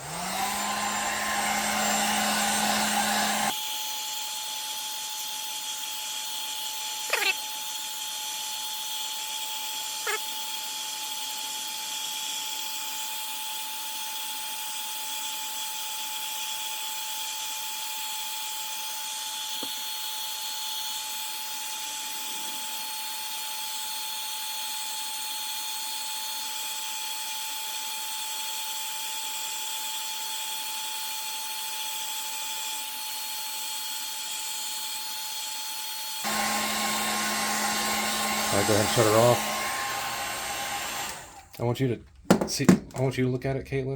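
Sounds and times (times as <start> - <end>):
hot-air blower whooshing: 0.0 - 3.6, 36.2 - 41.5.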